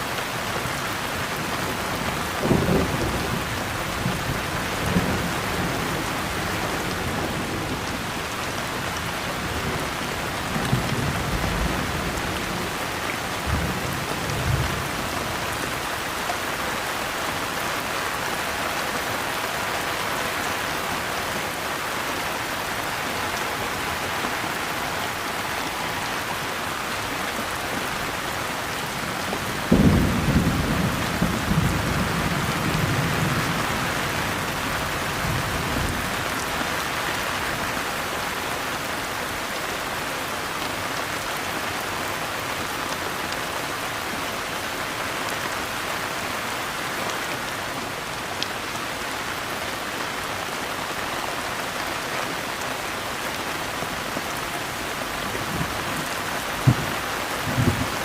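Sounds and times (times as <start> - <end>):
steady rain: 0.0 - 58.0
thunder rumbling: 29.4 - 34.2, 55.4 - 58.0.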